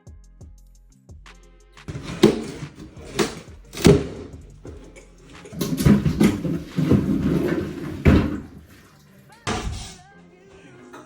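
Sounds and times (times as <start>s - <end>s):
sharp knocks and bangs: 1.9s - 8.8s
clattering and scraping: 1.9s - 10.0s.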